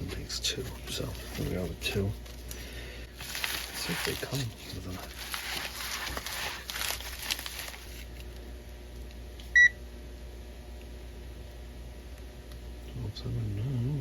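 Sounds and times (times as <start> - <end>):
rustling handling noise: 0.0 - 8.5.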